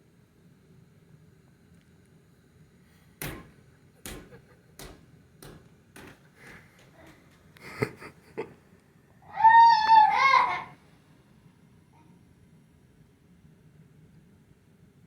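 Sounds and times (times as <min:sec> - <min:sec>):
ball bouncing on floor: 0:03.2 - 0:07.5
sharp knocks: 0:03.2 - 0:07.5.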